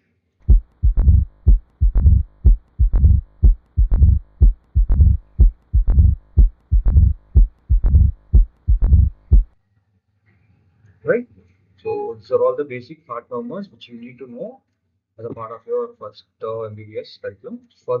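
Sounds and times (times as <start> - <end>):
swishing heart murmur: 0.5 - 9.5
heartbeat: 0.5 - 9.6.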